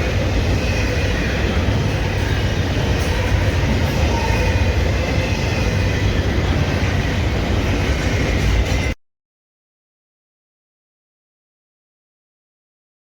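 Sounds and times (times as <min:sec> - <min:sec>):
freight train wheels rumbling: 0:00.0 - 0:09.0.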